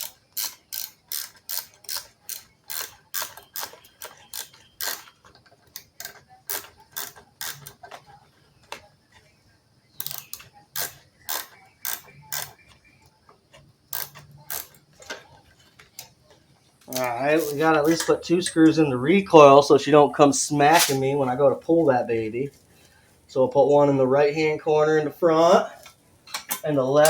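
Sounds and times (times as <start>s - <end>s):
ratchet wrench clicking: 0.0s - 7.9s, 10.0s - 12.6s, 13.9s - 15.2s.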